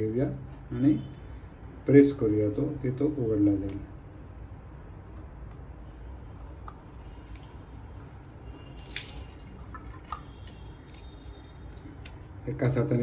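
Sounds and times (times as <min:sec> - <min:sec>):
water dripping in basin: 0:08.8 - 0:11.0.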